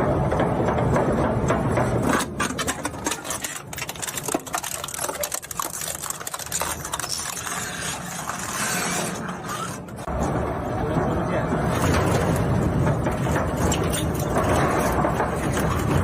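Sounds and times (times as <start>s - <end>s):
plastic crackling in shredder: 2.2s - 10.0s.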